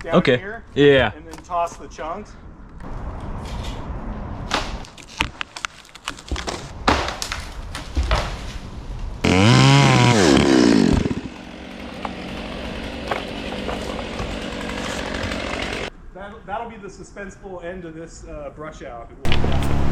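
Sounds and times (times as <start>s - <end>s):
sharp knocks and cracks: 4.5s - 8.6s
chainsaw revving and idling: 9.2s - 15.9s, 19.3s - 19.9s.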